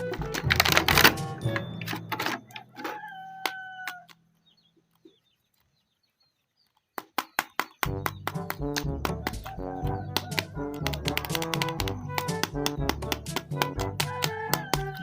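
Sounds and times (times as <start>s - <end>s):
background music with a beat: 0.0s - 2.1s, 7.8s - 15.0s
held crowing call: 0.0s - 4.2s, 9.0s - 15.0s
sharp clicks: 7.0s - 15.0s.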